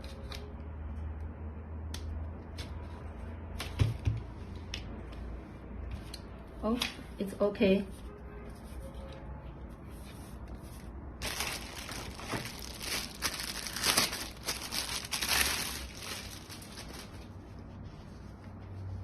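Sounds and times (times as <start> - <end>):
crinkling and rustling of mop parts: 10.4 - 17.4.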